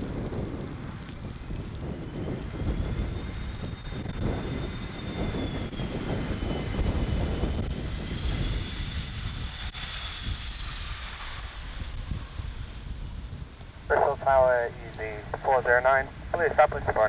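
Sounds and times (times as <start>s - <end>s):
high turbine whine: 0.0s - 17.0s
jet engine rumble: 0.0s - 17.0s.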